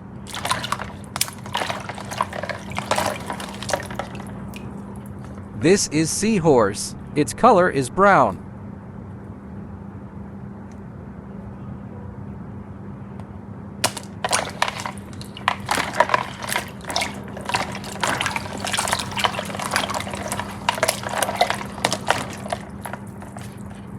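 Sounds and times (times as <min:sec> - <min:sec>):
water splashing: 0:00.0 - 0:05.4, 0:13.8 - 0:23.9.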